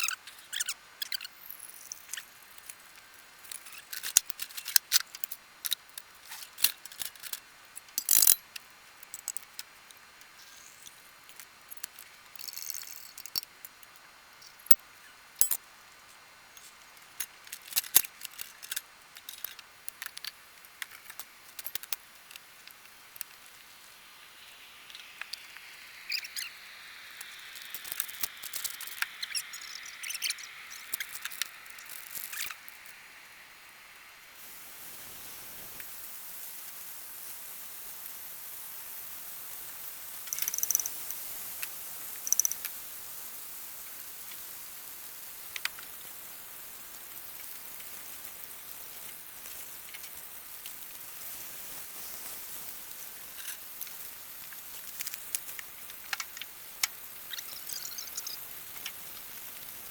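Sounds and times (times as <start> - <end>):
steady hiss: 0.0 - 59.9
coffee gear clicks and clinks: 3.4 - 9.7, 10.8 - 13.5, 15.4 - 15.6, 17.2 - 22.8, 40.3 - 41.0, 42.2 - 42.8.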